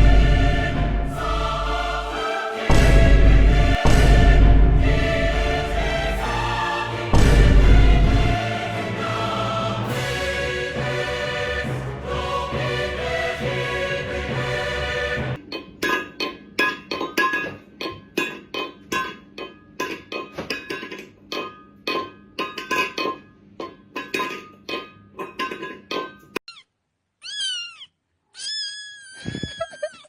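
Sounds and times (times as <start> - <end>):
cat meowing: 27.2 - 29.6.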